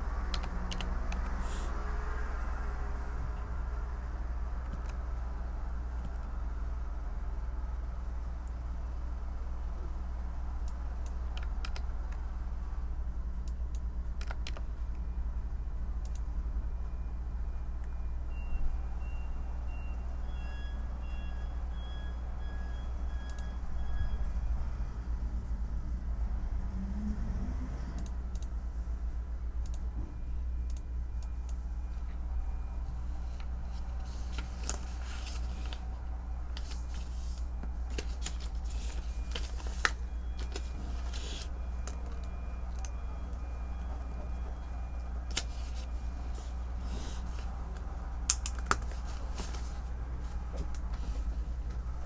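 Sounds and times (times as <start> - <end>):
keyboard typing: 0.2 - 1.7, 4.5 - 6.4, 10.6 - 12.2, 14.2 - 14.7
low background rumble: 23.5 - 52.0.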